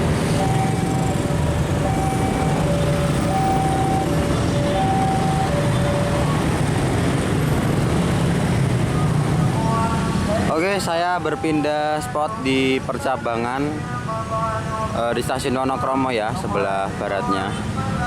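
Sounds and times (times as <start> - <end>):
road traffic rumble: 0.0 - 18.0
two-tone electronic warning beeps: 0.4 - 6.5.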